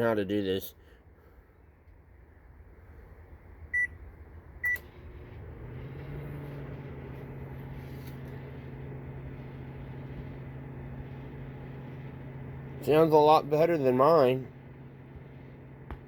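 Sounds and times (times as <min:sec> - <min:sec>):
microwave oven humming: 0:03.6 - 0:16.0
microwave oven beeping: 0:03.7 - 0:04.0, 0:04.6 - 0:07.6, 0:08.2 - 0:16.0.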